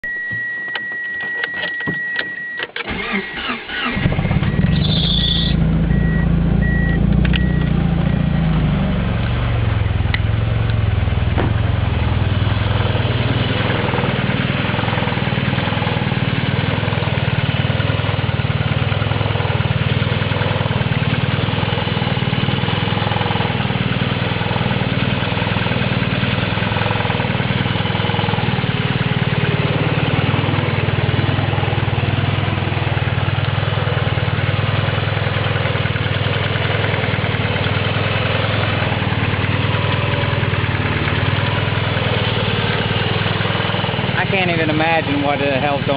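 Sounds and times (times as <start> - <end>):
high beeps: 0.0 - 2.7, 4.4 - 8.6
car engine cranking and idling: 0.1 - 45.9.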